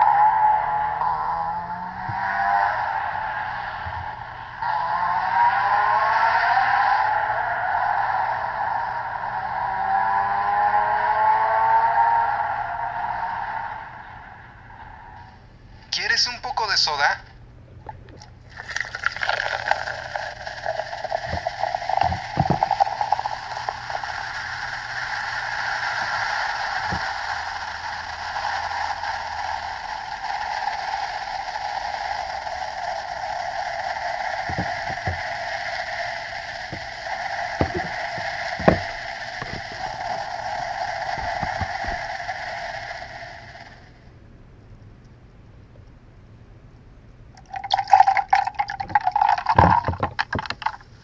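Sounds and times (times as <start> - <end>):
soda fizzing: 17.8 - 43.8, 47.4 - 51.0.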